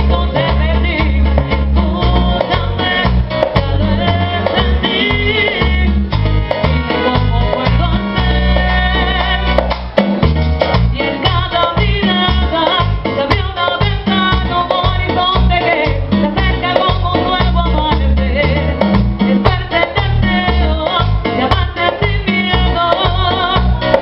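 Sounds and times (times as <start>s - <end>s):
person singing: 0.0s - 9.7s, 10.9s - 24.0s
guitar: 0.0s - 24.0s
latin band music: 0.0s - 24.0s
rhythmic bass line: 0.0s - 24.0s.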